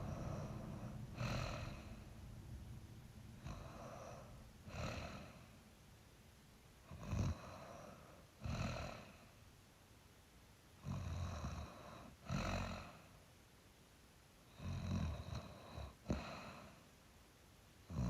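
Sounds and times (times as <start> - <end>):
person snoring: 0.0 - 2.0, 3.4 - 5.5, 6.9 - 9.2
quiet breathing: 0.0 - 5.8, 6.8 - 9.6, 10.8 - 13.4, 14.4 - 17.1.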